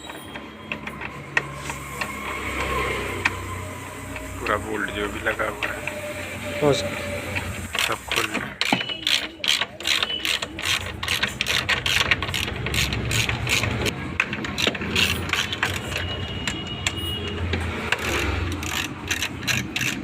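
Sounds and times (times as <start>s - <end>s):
hand tool clicking: 7.7s - 20.0s.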